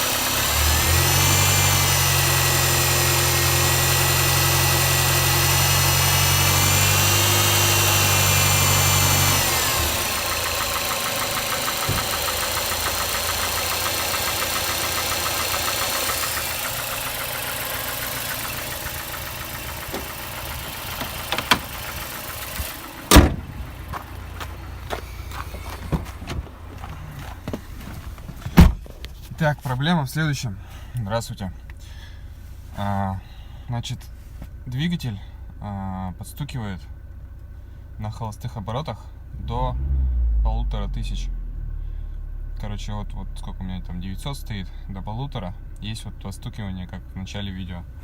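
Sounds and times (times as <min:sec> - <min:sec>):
car engine knocking at idle: 0:00.0 - 0:28.6.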